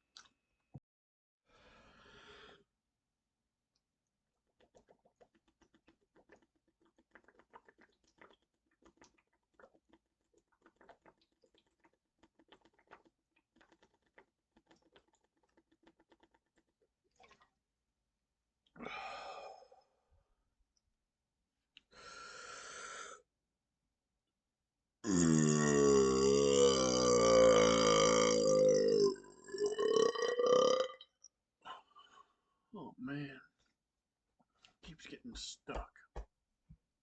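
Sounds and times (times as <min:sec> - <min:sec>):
gulping clicks: 0:04.4 - 0:17.6
person burping: 0:25.0 - 0:31.1.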